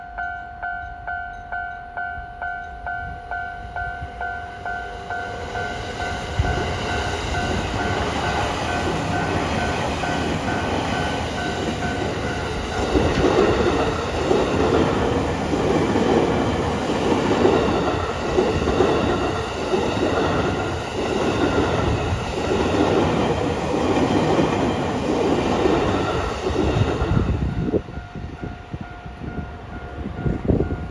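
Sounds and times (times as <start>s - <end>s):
train wheels clacking over rail joints: 5.7s - 27.2s.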